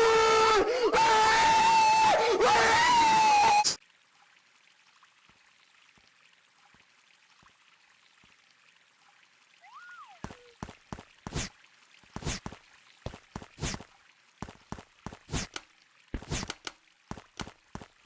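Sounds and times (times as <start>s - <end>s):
light hiss: 15.0s - 17.6s.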